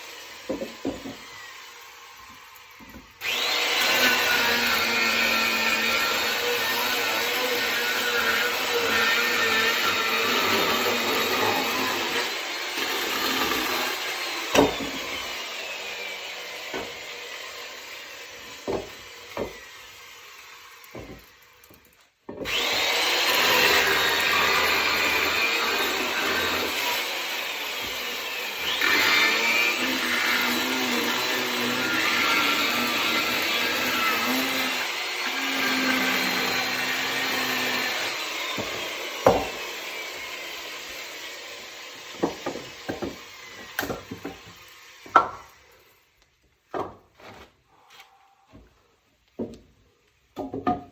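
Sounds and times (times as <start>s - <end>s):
chainsaw cutting wood: 0.0s - 45.9s
sharp knocks of wood: 46.7s - 47.1s, 50.4s - 50.9s.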